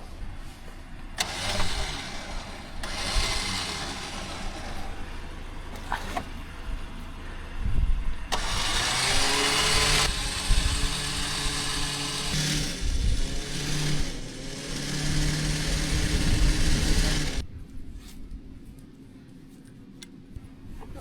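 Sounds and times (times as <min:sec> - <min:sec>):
vehicle engine running: 0:00.1 - 0:17.4.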